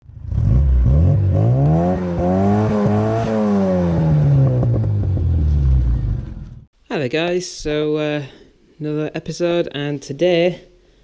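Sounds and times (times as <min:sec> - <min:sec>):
car engine revving: 0:00.0 - 0:06.7.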